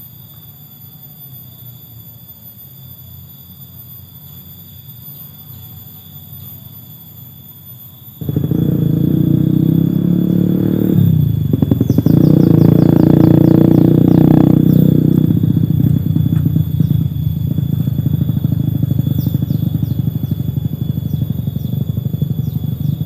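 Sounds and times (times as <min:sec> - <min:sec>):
quick high downward chirps: 0:08.2 - 0:23.0
small engine droning: 0:08.2 - 0:23.0.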